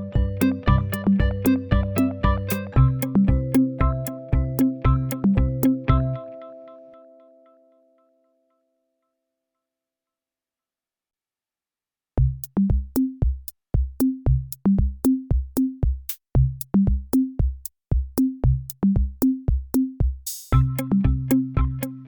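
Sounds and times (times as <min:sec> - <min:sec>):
electronic beat music: 0:00.0 - 0:06.4, 0:19.2 - 0:22.0.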